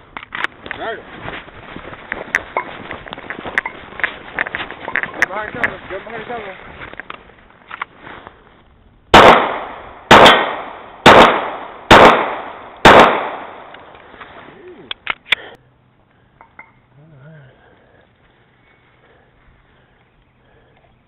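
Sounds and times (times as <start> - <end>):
pistol shots with echo: 9.1 - 13.7.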